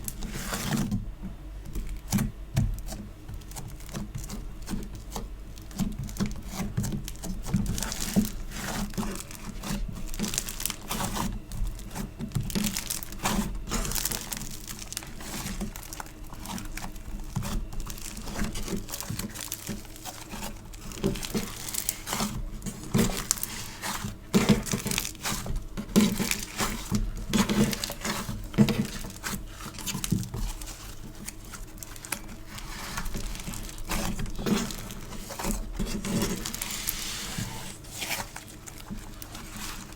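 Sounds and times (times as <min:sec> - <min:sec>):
slime crackling and popping: 0:02.8 - 0:39.9.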